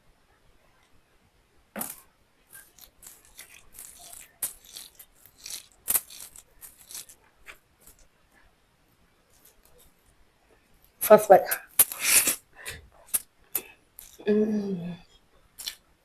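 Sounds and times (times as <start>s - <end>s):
chewing food: 1.8s - 8.1s, 11.6s - 14.3s, 15.1s - 15.8s.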